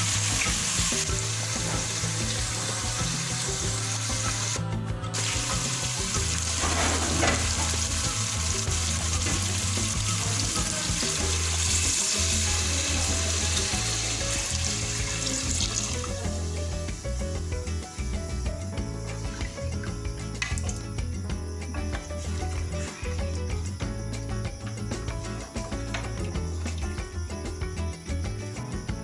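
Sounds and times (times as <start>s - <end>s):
curry sizzling in a pot: 0.0s - 4.6s, 5.2s - 17.6s
background music with bass: 0.0s - 29.0s.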